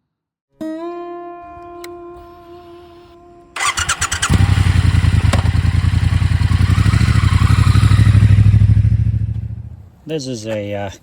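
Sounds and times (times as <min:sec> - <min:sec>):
motorcycle starter cranking: 0:03.6 - 0:09.3
motorcycle engine idling: 0:03.6 - 0:10.0.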